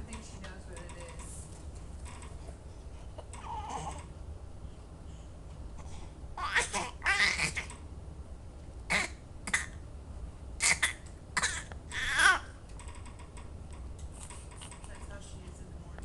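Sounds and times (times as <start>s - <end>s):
baby squealing and babbling: 6.4s - 7.7s, 11.9s - 12.5s.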